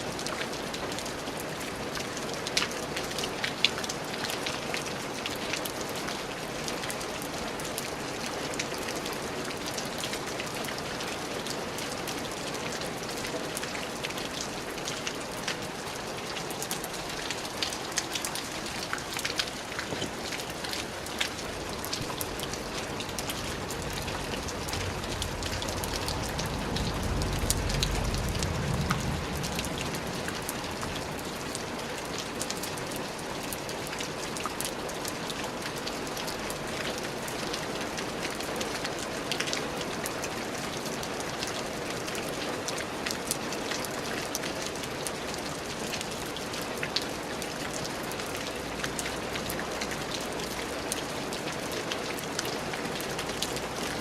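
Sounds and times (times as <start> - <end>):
steady rain: 0.0 - 54.0
low rumble: 23.4 - 31.2.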